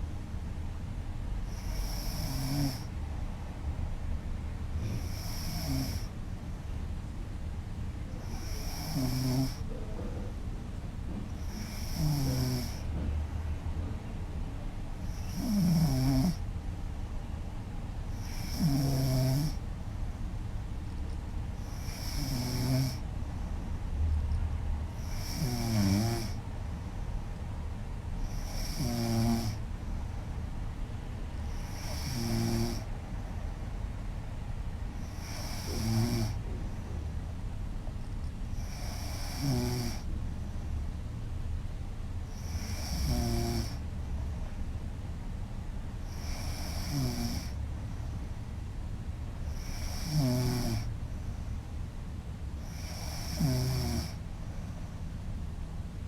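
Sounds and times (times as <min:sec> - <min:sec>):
steady low hum: 0:00.0 - 0:56.0
woman snoring loudly: 0:01.6 - 0:02.9, 0:04.8 - 0:06.1, 0:08.2 - 0:09.6, 0:11.4 - 0:12.8, 0:15.1 - 0:16.4, 0:18.2 - 0:19.6, 0:21.7 - 0:23.0, 0:25.0 - 0:26.4, 0:28.3 - 0:29.6, 0:31.6 - 0:32.9, 0:35.1 - 0:36.4, 0:38.6 - 0:40.1, 0:42.4 - 0:43.8, 0:46.1 - 0:47.6, 0:49.5 - 0:50.9, 0:52.7 - 0:54.2.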